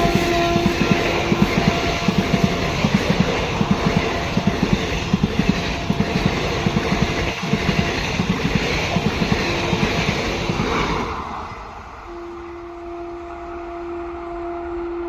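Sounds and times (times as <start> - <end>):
train wheels clattering over rail joints: 0.0 - 11.2
train rumble: 0.0 - 15.0.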